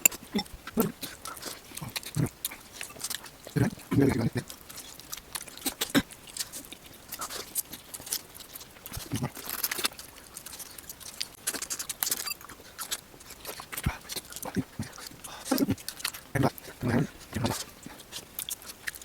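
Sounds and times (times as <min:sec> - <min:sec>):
heavier mouth sounds: 0:00.0 - 0:02.7, 0:03.5 - 0:04.5, 0:08.9 - 0:09.4, 0:13.8 - 0:18.1
chewing and crunching: 0:00.0 - 0:19.0.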